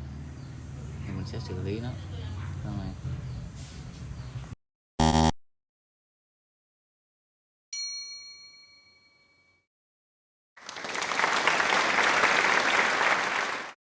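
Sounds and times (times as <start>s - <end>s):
bell ding: 7.8s - 9.7s
applause: 10.6s - 13.8s.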